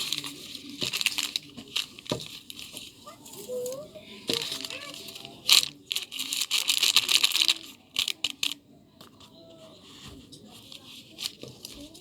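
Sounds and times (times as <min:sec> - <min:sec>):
packaging crinkling: 0:00.0 - 0:08.6.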